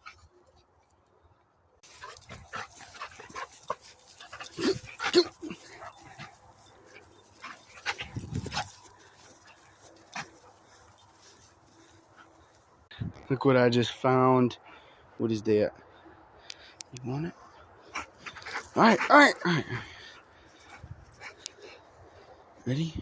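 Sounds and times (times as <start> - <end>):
dog whining and yipping: 2.0 - 6.3.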